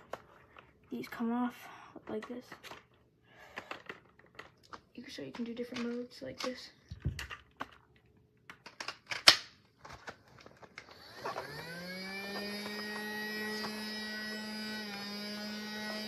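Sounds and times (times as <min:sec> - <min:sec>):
plastic clicks of toy vacuum: 0:08.5 - 0:09.5
toy vacuum motor whining: 0:10.5 - 0:16.0.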